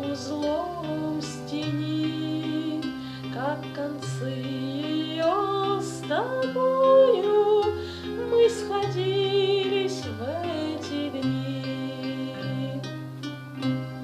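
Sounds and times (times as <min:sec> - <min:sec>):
woman singing with vibrato: 0:00.0 - 0:14.0.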